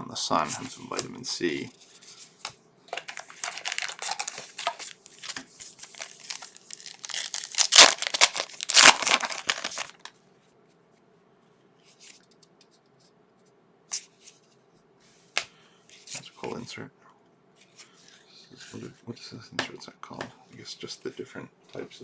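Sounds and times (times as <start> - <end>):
foil wrapper tearing and crinkling: 3.0 - 10.1.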